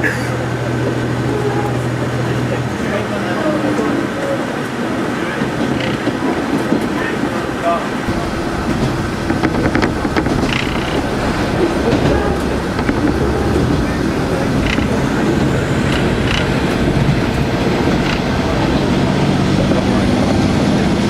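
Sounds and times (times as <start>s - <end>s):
diesel railcar rumble and drone: 0.0s - 21.0s
wheel and track clicks: 5.6s - 19.1s.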